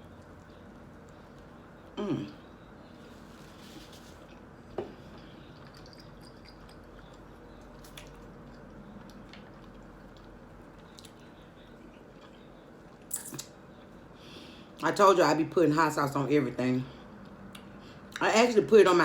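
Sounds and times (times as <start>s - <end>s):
person chewing food: 0.0s - 14.0s.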